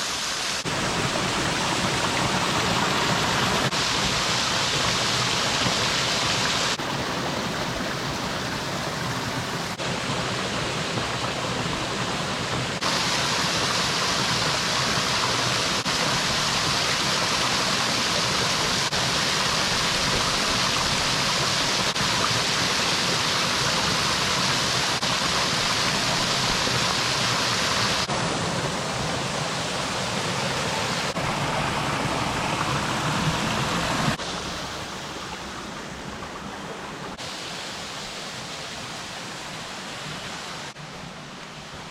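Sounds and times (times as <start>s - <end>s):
waterfall rushing: 0.0s - 41.9s.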